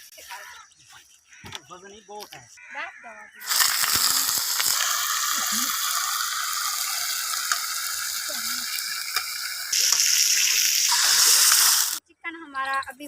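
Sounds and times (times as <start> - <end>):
chicken sizzling in hot oil: 3.4 - 12.0
oil popping: 3.4 - 12.0.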